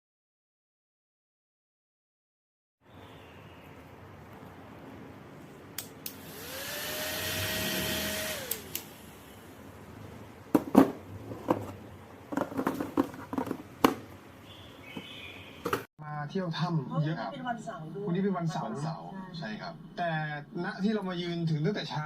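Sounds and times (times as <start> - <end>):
handheld vacuum motor whine: 6.1 - 9.3.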